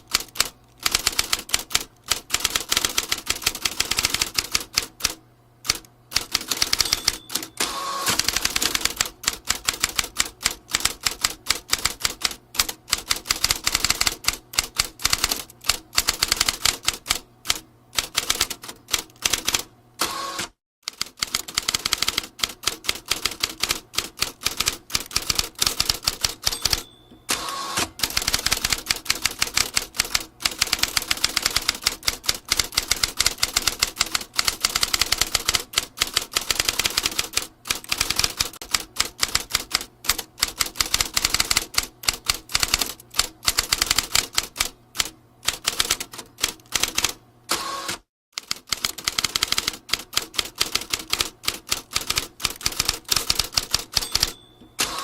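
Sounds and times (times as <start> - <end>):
typewriter key strikes: 5.7 - 17.0, 20.9 - 44.7, 48.4 - 55.0.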